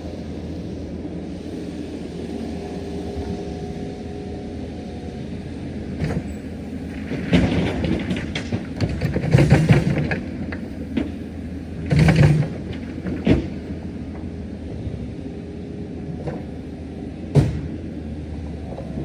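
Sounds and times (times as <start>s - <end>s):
metal clanks and knocks: 7.1s - 10.3s.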